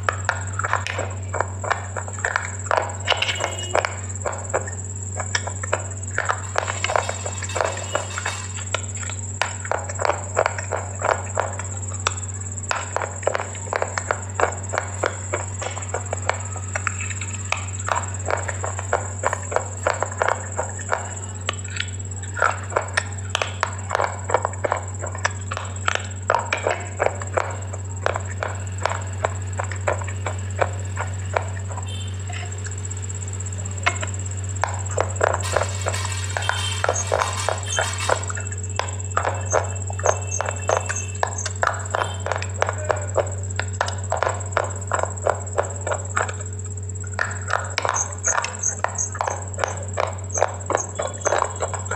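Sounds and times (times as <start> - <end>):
faint high whine: 0.0 - 51.9
steady low hum: 0.0 - 51.9
crunching and chewing: 34.6 - 38.5.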